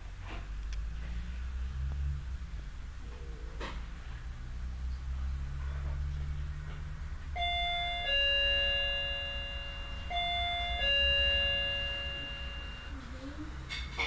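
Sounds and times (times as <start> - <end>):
electronic doorbell ding-dong chime: 7.4 - 13.0.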